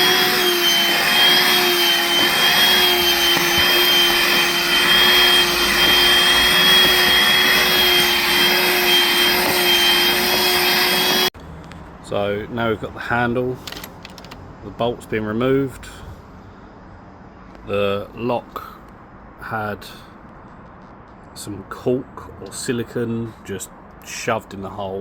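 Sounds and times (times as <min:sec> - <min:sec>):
power tool cutting wood: 0:00.0 - 0:11.3.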